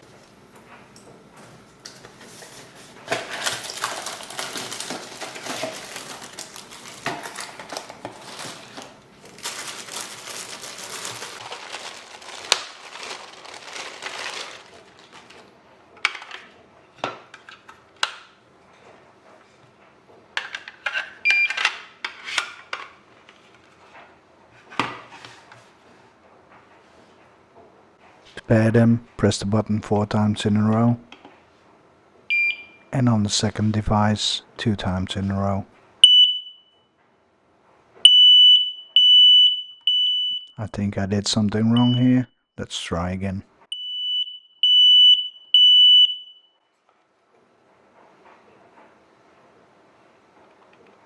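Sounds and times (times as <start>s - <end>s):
rustling and clattering plastic: 1.9s - 16.6s.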